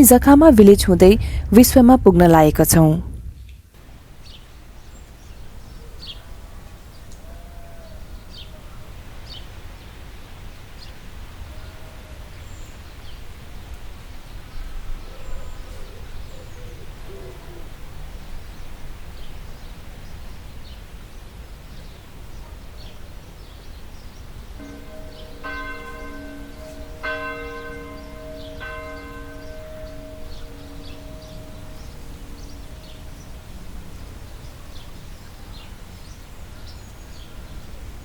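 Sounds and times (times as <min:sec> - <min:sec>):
steady low rumble: 0:00.0 - 0:03.7.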